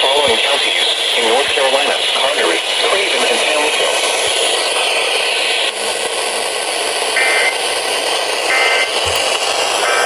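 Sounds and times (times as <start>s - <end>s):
broadcast static hiss: 0.0s - 10.0s
two-tone digital data bursts: 7.2s - 7.6s.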